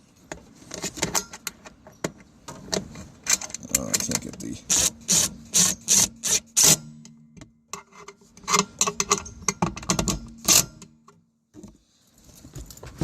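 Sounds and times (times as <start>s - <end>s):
wrench clicking on metal bolts: 3.3s - 7.2s.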